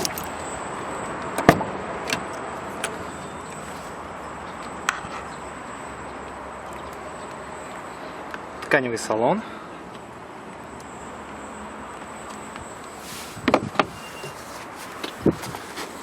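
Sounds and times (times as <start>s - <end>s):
door lock clunk: 1.4s - 3.0s
latch clicks and knocks: 1.4s - 3.0s.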